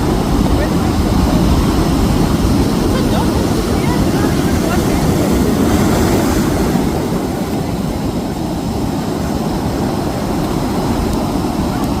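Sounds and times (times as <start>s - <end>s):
ocean surf: 0.0s - 12.0s
wind: 0.0s - 12.0s.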